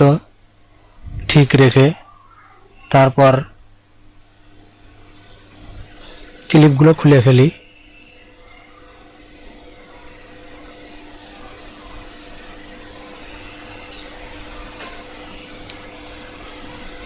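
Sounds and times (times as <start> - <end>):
faint hum: 0.0 - 17.0.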